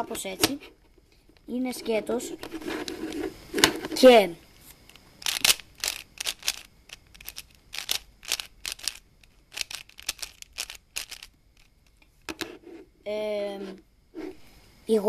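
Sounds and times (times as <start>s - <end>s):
puzzle cube clicking: 4.8s - 12.0s.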